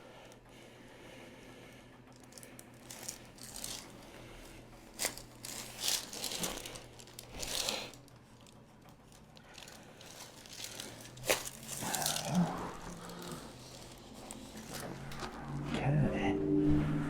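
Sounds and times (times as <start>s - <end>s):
rustling and crinkling on table: 2.2s - 15.5s.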